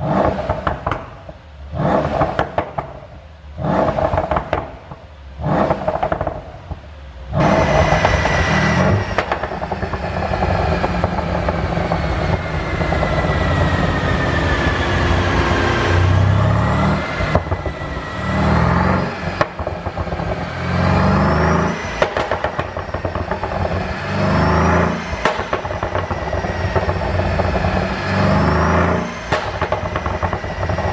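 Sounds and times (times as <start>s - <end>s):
sharp exhaust pops: 0.0s - 6.8s, 7.4s - 14.6s, 17.0s - 30.9s
car engine revving: 0.0s - 30.9s.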